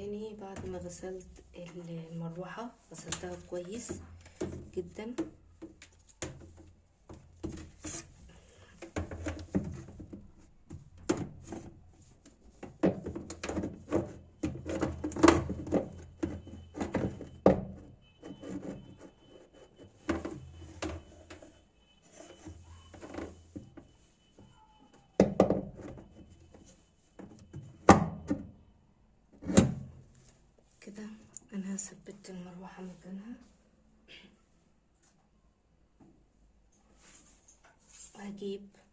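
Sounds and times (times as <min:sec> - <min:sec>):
plastic knocking and clattering: 0:03.0 - 0:19.2, 0:19.8 - 0:21.5, 0:22.3 - 0:23.9, 0:25.2 - 0:28.5.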